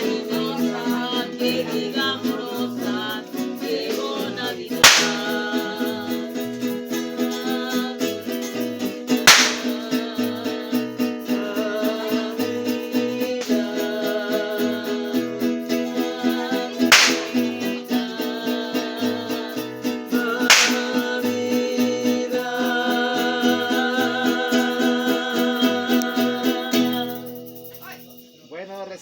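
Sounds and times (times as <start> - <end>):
string band playing a song: 0.0 - 27.5
loud sharp cracks: 4.8 - 5.6, 9.3 - 10.0, 16.9 - 17.6, 20.5 - 21.2.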